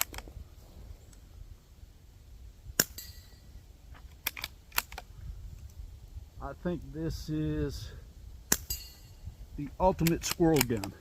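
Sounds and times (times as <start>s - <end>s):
quiet metallic clicks: 3.9s - 5.8s, 9.6s - 11.0s
brief metallic ring: 8.7s - 9.2s.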